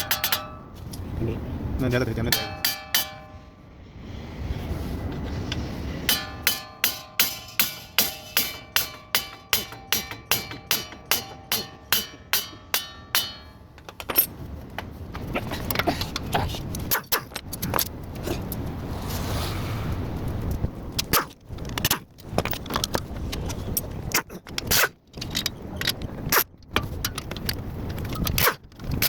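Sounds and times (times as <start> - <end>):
hammer striking steel: 0.0 - 0.8, 2.3 - 3.6, 6.0 - 13.7
metal clinks and scraping: 0.0 - 1.0, 6.0 - 14.5.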